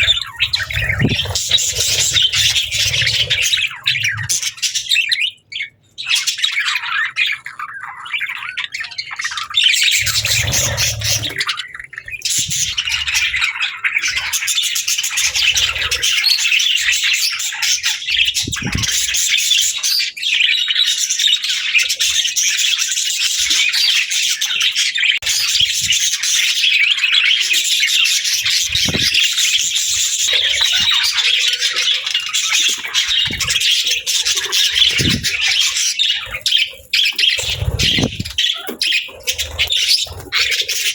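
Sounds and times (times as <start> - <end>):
budgerigars chirping and squawking: 0.0 - 40.9.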